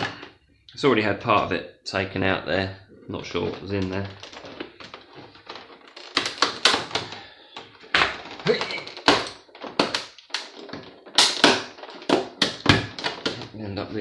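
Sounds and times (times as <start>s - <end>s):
plastic casing cracking and knocking: 3.8s - 13.6s.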